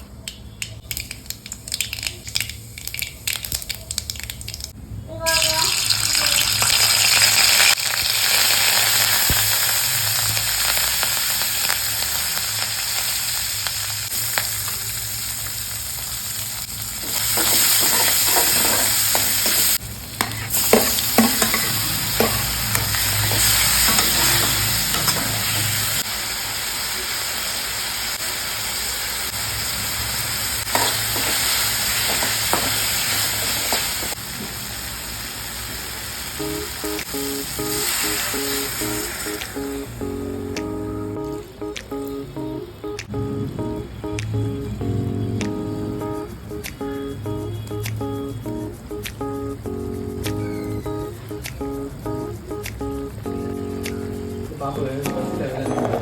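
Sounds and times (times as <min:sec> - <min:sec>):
food sizzling in hot oil: 0:00.9 - 0:40.1.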